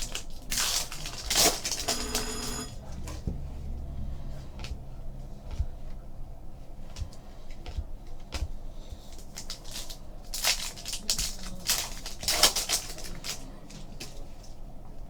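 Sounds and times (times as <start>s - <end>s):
plastic wrapper crinkling: 9.4s - 13.4s.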